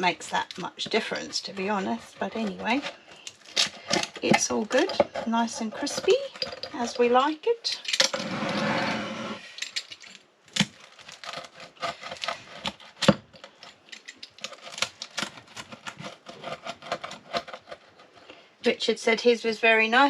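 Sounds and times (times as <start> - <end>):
crispy pizza crackling: 0.0 - 7.2, 9.4 - 18.2.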